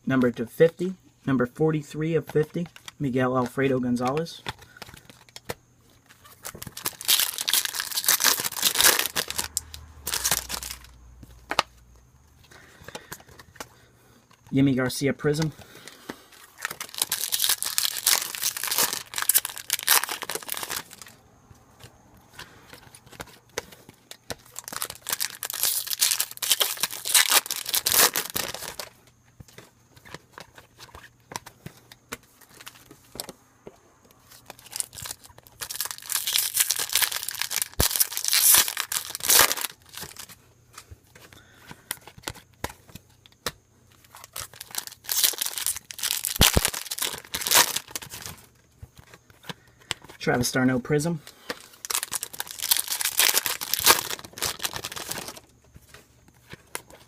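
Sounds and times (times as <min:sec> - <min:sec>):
foil packs torn and crinkled: 0:06.0 - 0:11.7, 0:15.4 - 0:21.2, 0:22.4 - 0:29.0, 0:34.3 - 0:40.4, 0:43.3 - 0:50.5, 0:51.3 - 0:57.0.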